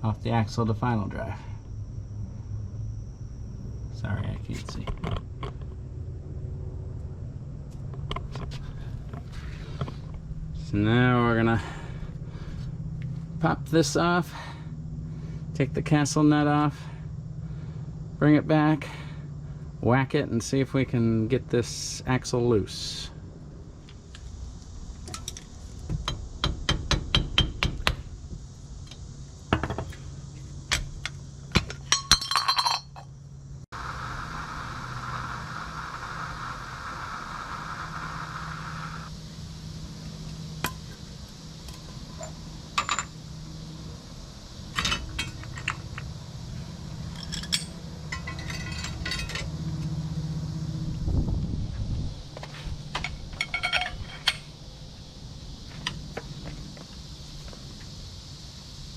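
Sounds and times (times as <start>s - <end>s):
metal tools clinking and tapping: 31.6s - 33.1s, 42.2s - 43.1s, 47.1s - 49.9s, 53.0s - 54.5s
steady hiss: 33.7s - 58.9s.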